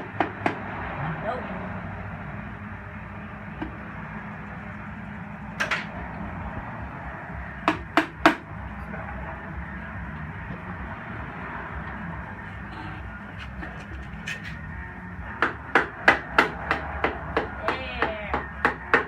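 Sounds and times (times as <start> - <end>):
steady low hum: 0.8 - 17.4
sharp knocks: 7.6 - 8.5.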